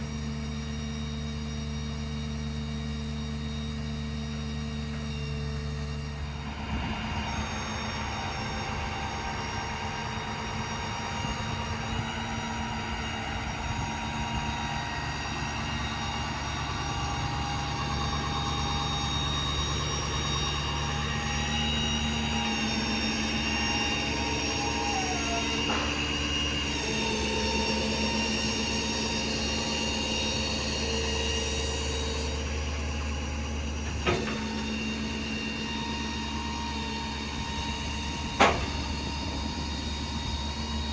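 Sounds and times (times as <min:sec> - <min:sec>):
engine and hydraulic pump hum: 0:00.0 - 0:40.9
hydraulic whining tones: 0:00.0 - 0:40.9.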